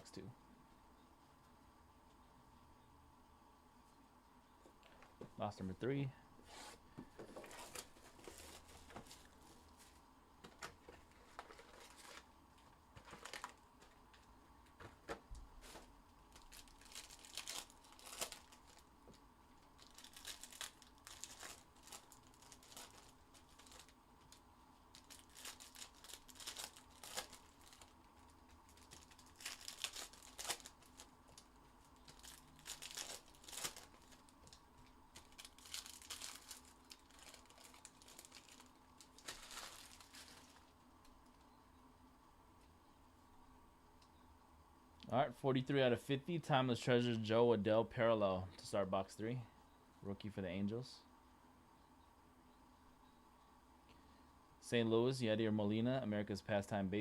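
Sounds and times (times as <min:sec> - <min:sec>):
plastic wrapping crinkling and tearing: 0:10.5 - 0:12.3, 0:13.0 - 0:14.3, 0:15.6 - 0:40.8.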